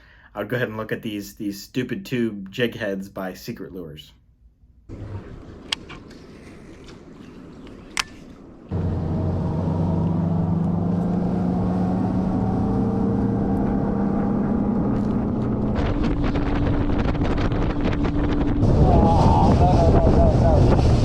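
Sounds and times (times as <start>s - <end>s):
outboard motor running: 4.9s - 6.9s, 8.7s - 18.9s
wind buffeting microphone: 4.9s - 21.0s.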